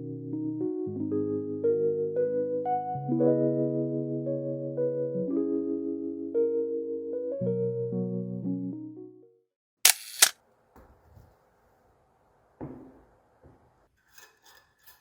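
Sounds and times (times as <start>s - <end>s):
camera shutter clicks: 9.9s - 10.4s.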